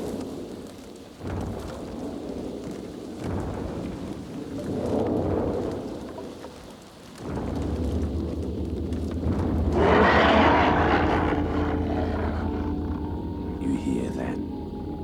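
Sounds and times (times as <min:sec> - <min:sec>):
low droning hum: 0:07.4 - 0:15.0
loud whooshing: 0:09.4 - 0:13.1.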